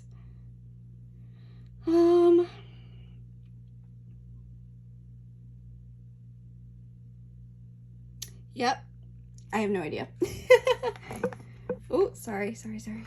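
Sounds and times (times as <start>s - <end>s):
steady low hum: 0.0s - 13.0s
woman humming: 1.8s - 3.0s.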